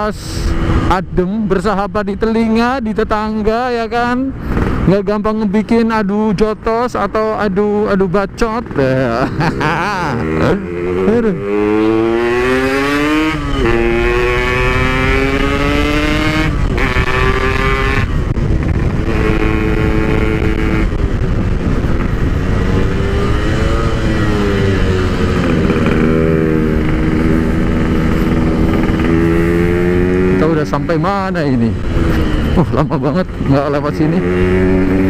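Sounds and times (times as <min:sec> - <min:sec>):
motorcycle engine accelerating: 0:07.2 - 0:35.0.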